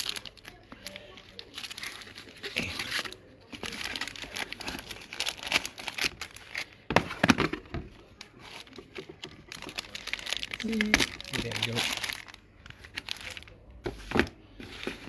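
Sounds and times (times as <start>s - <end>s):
packaging crinkling: 0.0s - 7.3s, 8.1s - 13.6s.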